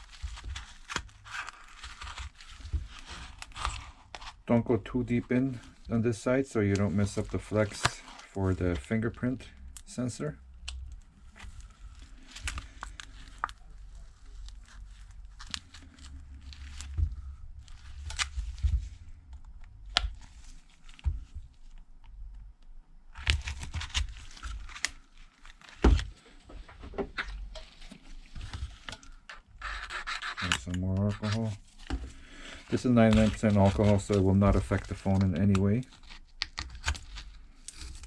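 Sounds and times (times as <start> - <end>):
adhesive crackling and ticking: 0.0 - 26.3, 28.4 - 38.0
plastic card scraping under glass: 27.2 - 32.0.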